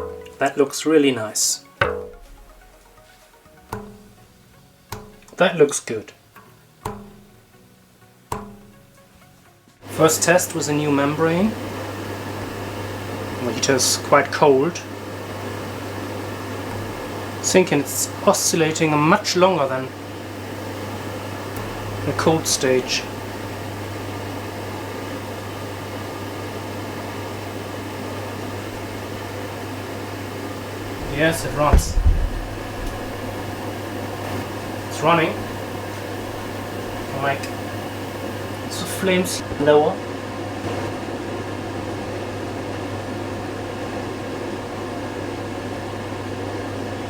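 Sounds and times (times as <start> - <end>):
gas burner hissing: 2.2 - 41.9
low hum: 31.0 - 33.9.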